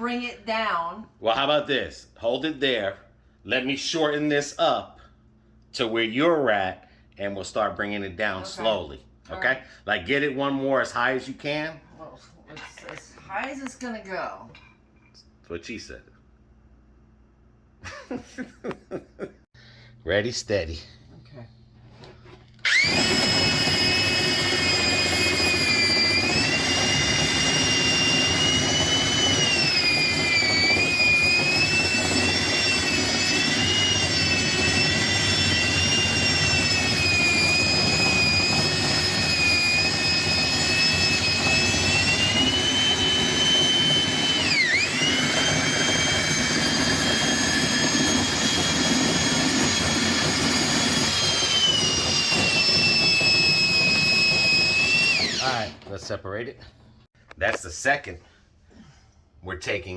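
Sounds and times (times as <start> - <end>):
electric drill motor whine: 22.6 - 56.0.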